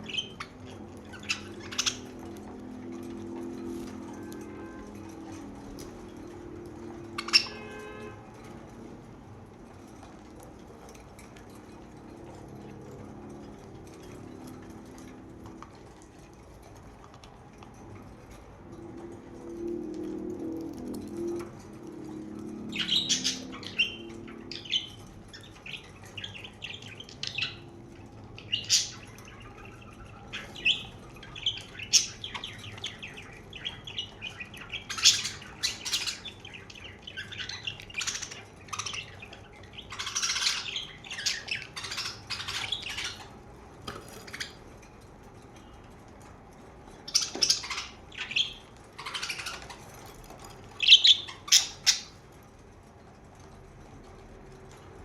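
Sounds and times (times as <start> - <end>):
budgerigars chirping and squawking: 0.0 - 12.4, 21.0 - 46.3, 46.9 - 52.4.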